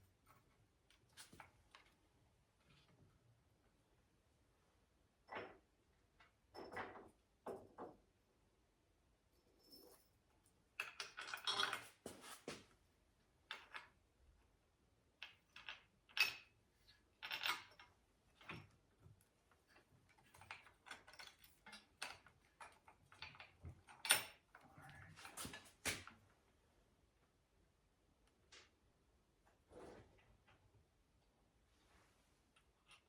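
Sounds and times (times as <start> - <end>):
metal parts clicking and rattling: 10.8 - 12.0.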